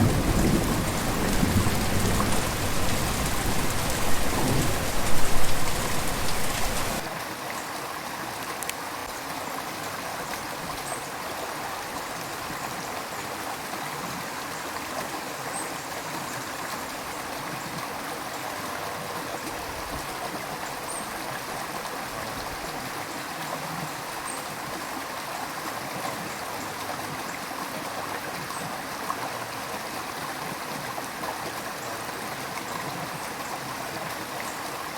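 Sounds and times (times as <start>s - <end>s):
rain rushing with low rumble: 0.0s - 7.2s
river flowing: 0.0s - 34.9s.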